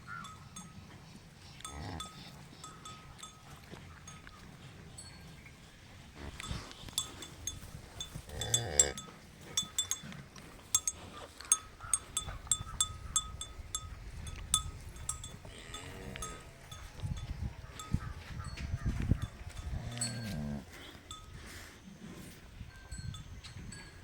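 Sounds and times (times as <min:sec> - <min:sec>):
cattle bell clinking: 0:00.0 - 0:24.0
animal calls: 0:10.8 - 0:13.3.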